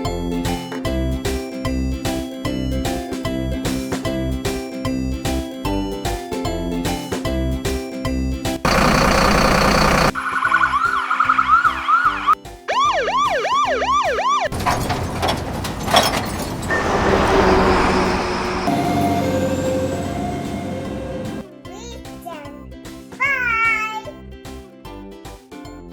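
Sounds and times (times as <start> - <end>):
loud rough noise: 8.7 - 10.1, 14.6 - 21.4
siren wailing: 8.7 - 14.6, 16.7 - 21.5.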